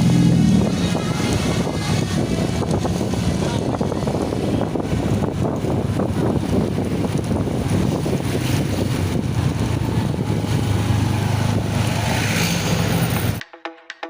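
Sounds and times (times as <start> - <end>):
bus engine and road rumble: 0.0 - 13.4
wind buffeting microphone: 0.0 - 13.4
music: 13.3 - 14.0.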